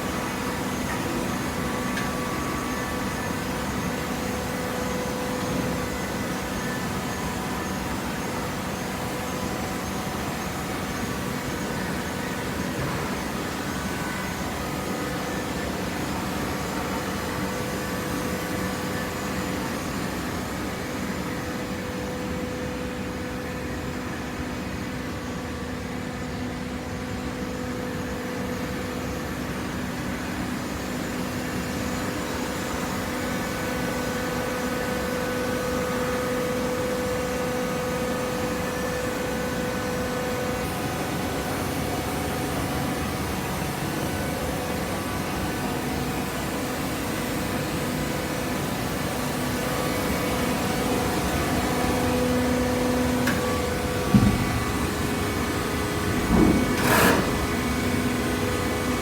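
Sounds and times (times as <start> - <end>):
baler machine hum: 48.5 - 59.0.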